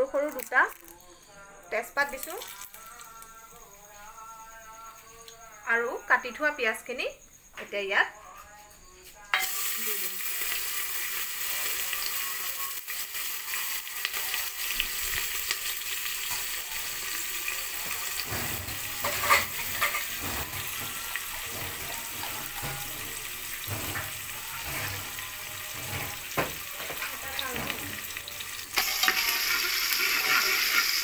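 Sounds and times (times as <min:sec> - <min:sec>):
onions sizzling in hot oil: 0:09.4 - 0:31.0
spatula stirring and scraping: 0:18.2 - 0:28.0, 0:28.8 - 0:31.0.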